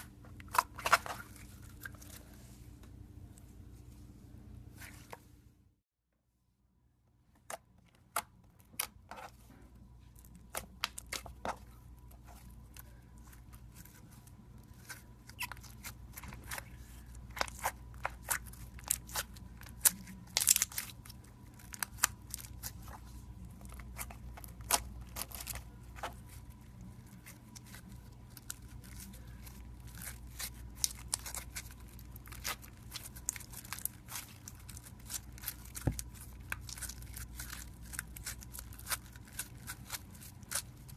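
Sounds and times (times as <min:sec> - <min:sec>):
faint low hum: 0:00.0 - 0:40.9
slime crackling and popping: 0:17.3 - 0:22.8, 0:27.2 - 0:40.9.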